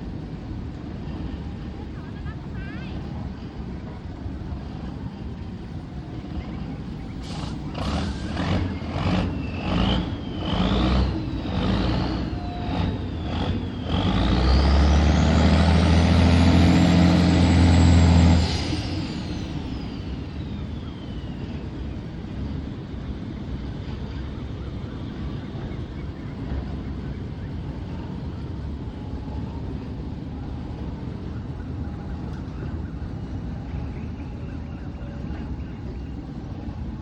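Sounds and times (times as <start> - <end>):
high engine whine: 0.0 - 37.0
diesel engine throttling: 6.2 - 23.3.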